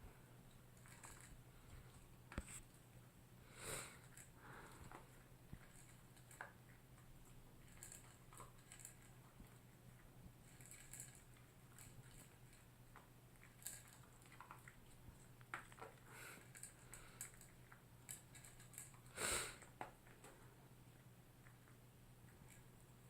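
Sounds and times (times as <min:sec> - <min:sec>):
dog chewing food: 0:04.0 - 0:20.2.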